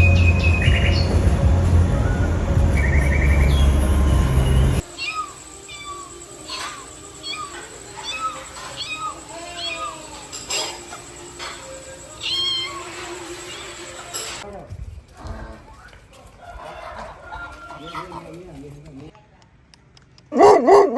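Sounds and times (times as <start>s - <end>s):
birds chirping: 0.0s - 6.0s
music: 0.0s - 14.4s
cat meowing: 4.9s - 10.3s, 12.2s - 13.7s.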